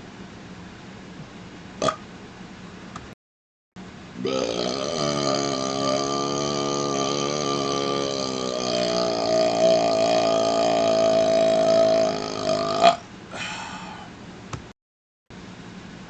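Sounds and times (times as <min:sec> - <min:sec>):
man belching: 0:01.8 - 0:02.0, 0:04.2 - 0:13.6.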